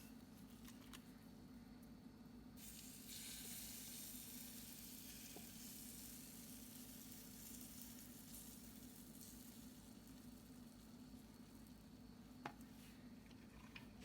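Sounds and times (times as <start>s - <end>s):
batter sizzling in waffle iron: 2.6s - 13.1s.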